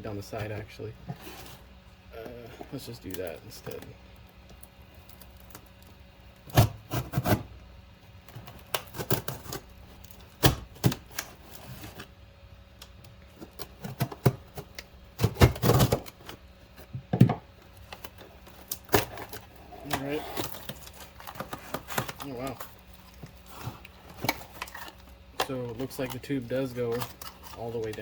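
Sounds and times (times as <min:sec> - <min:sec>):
knife cutting cardboard: 0:06.5 - 0:07.5.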